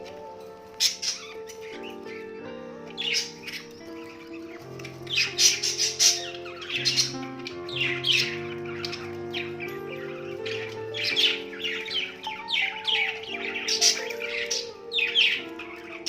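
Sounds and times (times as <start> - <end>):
slow background music: 0.0 - 16.0
budgie chirping and chattering: 0.7 - 16.0.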